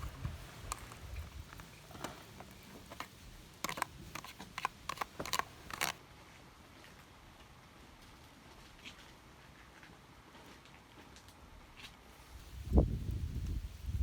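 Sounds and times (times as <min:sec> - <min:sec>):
sharp clicks and rustles: 0:00.0 - 0:06.0.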